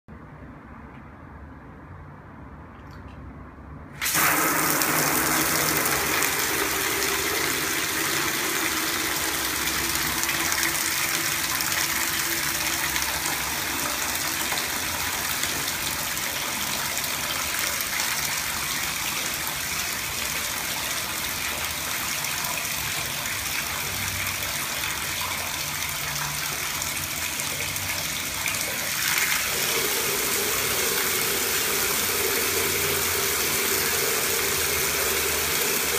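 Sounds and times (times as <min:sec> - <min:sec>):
shower head spraying water: 0:04.0 - 0:16.6, 0:28.7 - 0:35.9.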